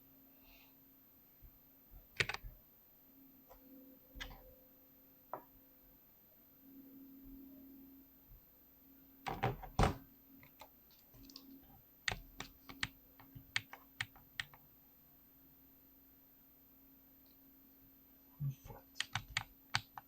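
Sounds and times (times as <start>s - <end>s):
keyboard keys clicking: 2.2s - 2.4s, 12.1s - 14.6s, 19.0s - 20.0s.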